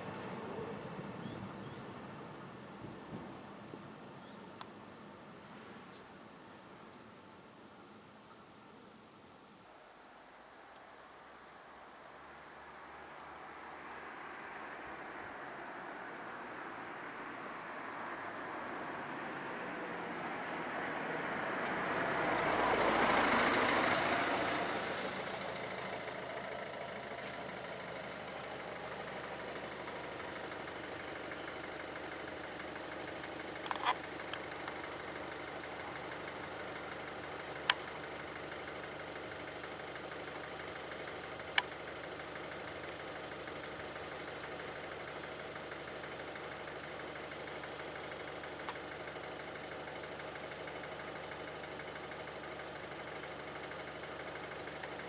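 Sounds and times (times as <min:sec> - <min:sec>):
vehicle passing: 0:12.7 - 0:37.0
engine idling: 0:14.9 - 0:55.0
sharp clicks: 0:33.5 - 0:35.2, 0:37.0 - 0:38.0.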